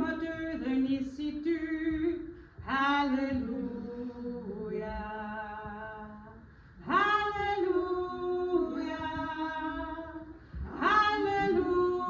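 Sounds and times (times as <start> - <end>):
unaccompanied singing in harmony: 6.8 - 12.0.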